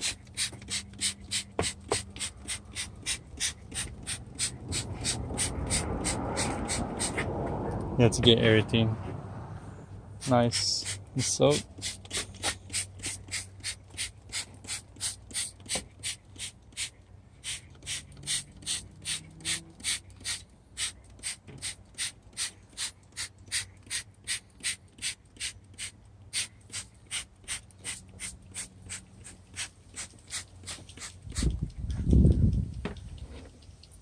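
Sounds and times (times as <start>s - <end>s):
spray bottle hissing: 0.0s - 7.3s, 10.2s - 31.5s.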